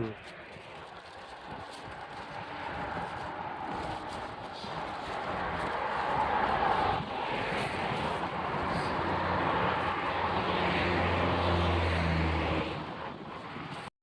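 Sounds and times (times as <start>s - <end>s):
steady rushing noise: 0.1s - 13.9s
vehicle engine passing by: 8.6s - 13.0s.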